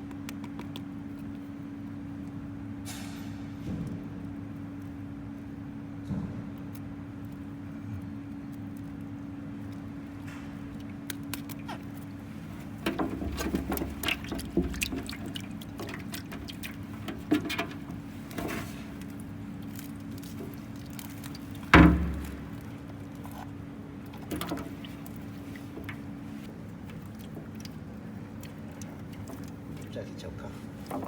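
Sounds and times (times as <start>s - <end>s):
steady low hum: 0.0s - 31.0s
loud knock: 21.8s - 22.6s.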